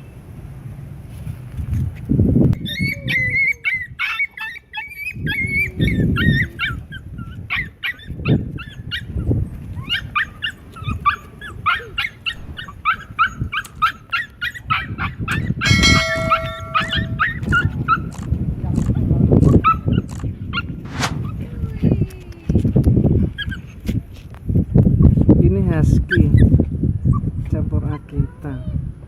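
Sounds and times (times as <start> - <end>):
dog whining and yipping: 2.6 - 18.2, 19.6 - 21.4, 23.4 - 23.8.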